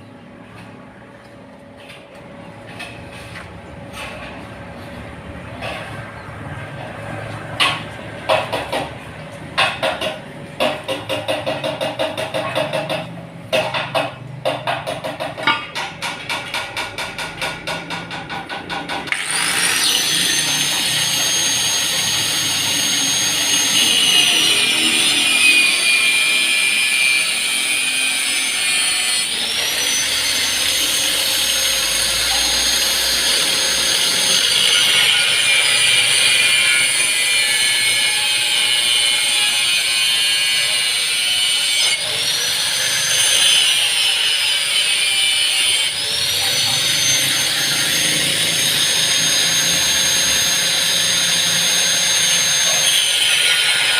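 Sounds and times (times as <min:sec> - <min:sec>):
rhythmic sawing strokes: 0:07.0 - 0:53.9
power tool grinding metal: 0:19.1 - 0:53.9.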